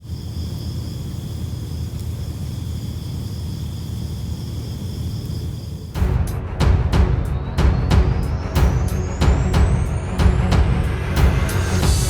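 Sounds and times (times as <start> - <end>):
high-pitched insect drone: 0.0 - 6.0
low rumble: 6.0 - 12.0.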